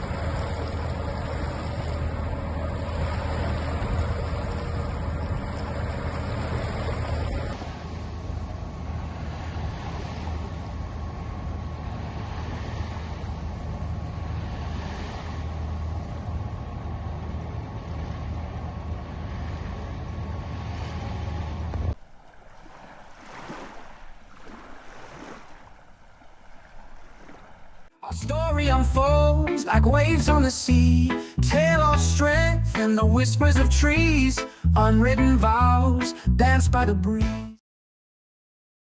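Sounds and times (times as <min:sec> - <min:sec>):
rushing water: 0:00.0 - 0:11.2, 0:22.0 - 0:28.0
waves washing: 0:00.0 - 0:16.3, 0:22.0 - 0:28.4
wind: 0:00.0 - 0:29.5
boat engine rumble: 0:00.0 - 0:36.6.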